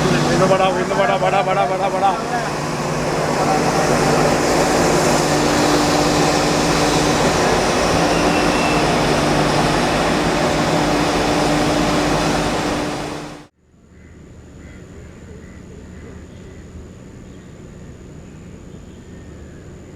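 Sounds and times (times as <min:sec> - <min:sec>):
low hum: 0:00.0 - 0:13.5
passenger train rumbling past: 0:00.0 - 0:13.5.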